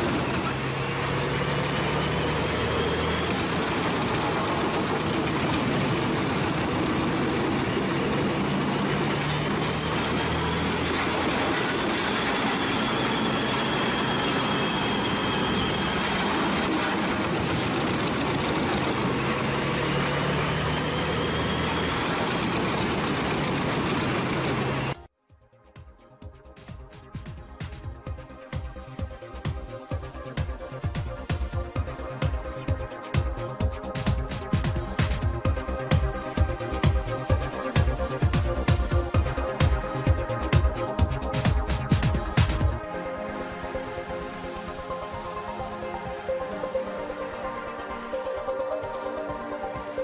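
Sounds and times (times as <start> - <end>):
wood chipper running: 0.0 - 25.0.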